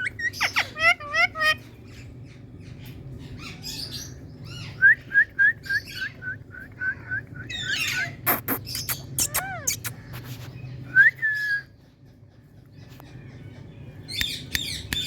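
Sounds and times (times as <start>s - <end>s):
parakeet scratchy chatter: 0.1s - 2.4s, 7.6s - 10.8s
parakeet short chirps: 7.9s - 10.2s.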